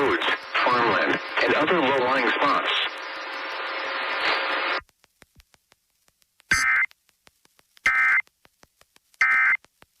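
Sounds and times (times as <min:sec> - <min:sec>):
digital data tone bursts: 0:06.5 - 0:06.9, 0:07.8 - 0:08.2, 0:09.2 - 0:09.6.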